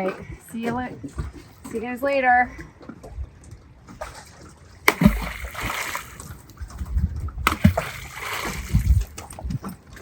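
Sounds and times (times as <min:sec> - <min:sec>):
shells splashing into water: 0:04.8 - 0:06.4, 0:07.4 - 0:09.4.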